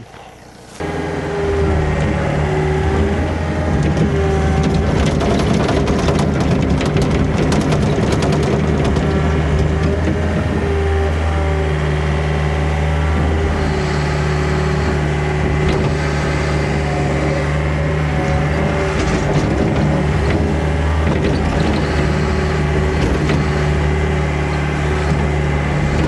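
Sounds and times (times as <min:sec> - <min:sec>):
diesel engine under load: 0:00.0 - 0:26.0
wood cracking and snapping: 0:03.7 - 0:10.6.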